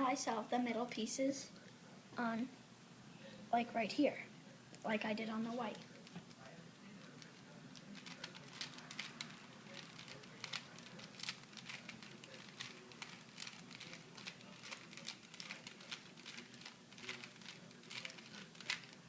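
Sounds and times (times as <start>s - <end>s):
puzzle cube clicking and rattling: 7.1s - 19.0s.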